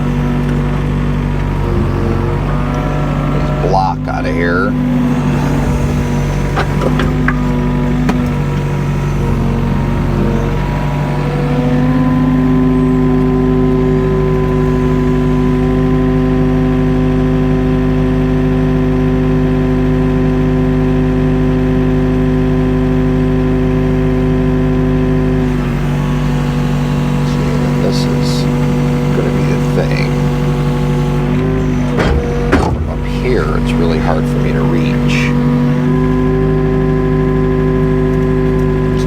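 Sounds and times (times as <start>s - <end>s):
excavator diesel engine running: 0.0s - 39.0s
short knocks: 5.2s - 11.1s, 25.5s - 35.7s.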